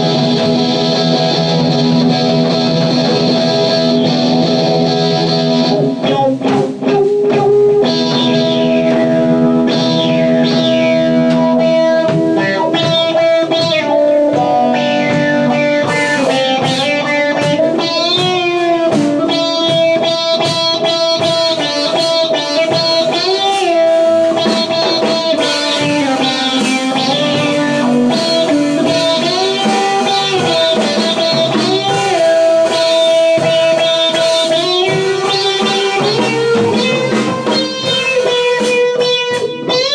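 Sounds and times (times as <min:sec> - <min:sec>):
electric guitar playing blues: 0:00.0 - 0:39.9.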